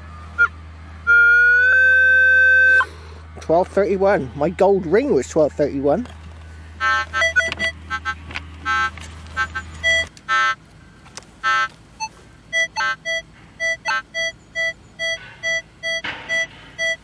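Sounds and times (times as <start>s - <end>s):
metal detector beeps: 6.8s - 10.6s, 11.4s - 17.0s.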